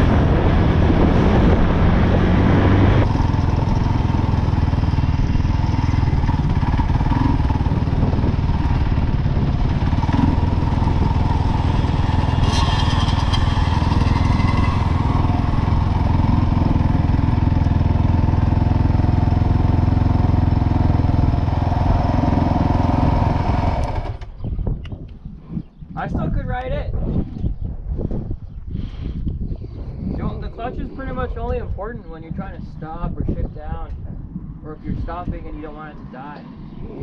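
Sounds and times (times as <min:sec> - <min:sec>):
atv engine running: 0:00.0 - 0:24.5.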